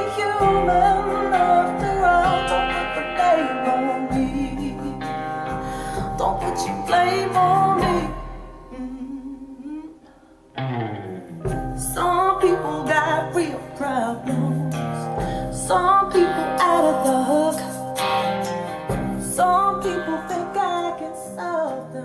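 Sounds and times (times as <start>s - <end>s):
acoustic guitar: 0.0s - 22.0s.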